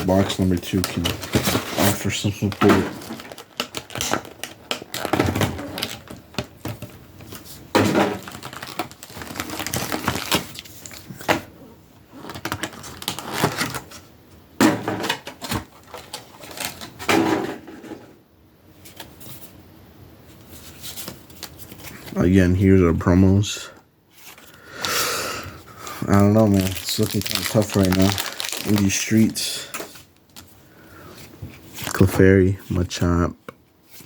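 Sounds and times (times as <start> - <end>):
cardboard packaging rustling: 0.0 - 11.4, 12.1 - 14.1, 15.2 - 17.1, 26.0 - 30.6.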